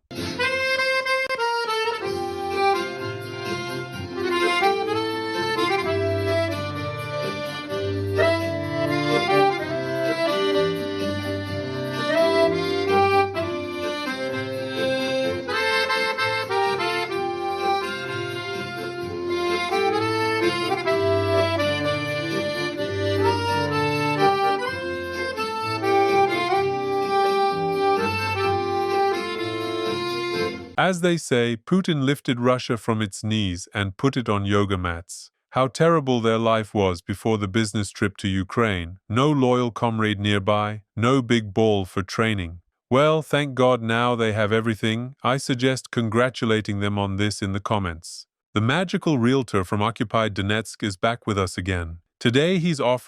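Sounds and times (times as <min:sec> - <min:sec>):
accordion playing a tune: 0:00.1 - 0:30.9.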